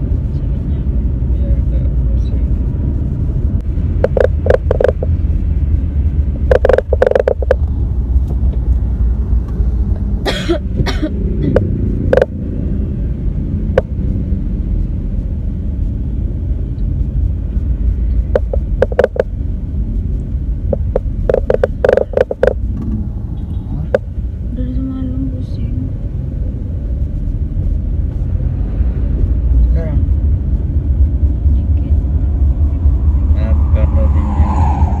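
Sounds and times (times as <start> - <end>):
car engine rumbling: 0.0 - 35.0
person coughing: 10.2 - 11.6.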